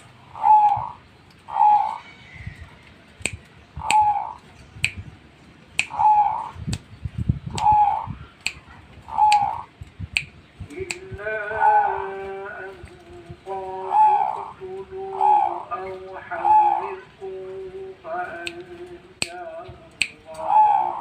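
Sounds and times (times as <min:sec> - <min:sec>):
bird calling: 0:00.0 - 0:21.0
sharp clicks: 0:03.2 - 0:04.2, 0:04.8 - 0:05.1, 0:05.7 - 0:06.0, 0:06.6 - 0:06.9, 0:09.3 - 0:11.3, 0:18.3 - 0:20.5.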